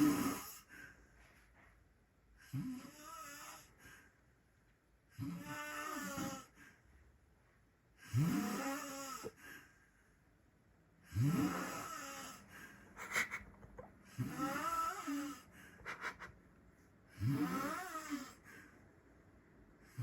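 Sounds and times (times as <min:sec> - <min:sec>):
person snoring: 0:08.1 - 0:09.4, 0:11.1 - 0:16.3, 0:17.2 - 0:18.4.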